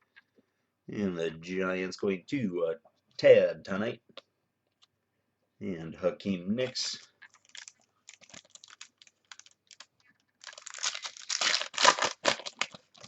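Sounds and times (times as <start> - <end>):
foil wrapper tearing and crinkling: 7.4 - 13.0.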